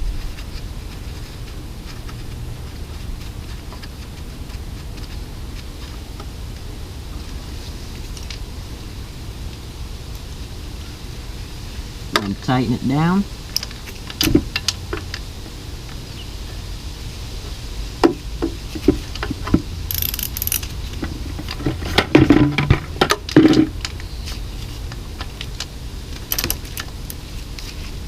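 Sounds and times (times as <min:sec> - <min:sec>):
steady low rumble: 0:00.0 - 0:12.1
socket wrench clicking: 0:19.9 - 0:20.7, 0:26.3 - 0:27.2
tools being handled: 0:19.9 - 0:20.8, 0:26.2 - 0:27.9.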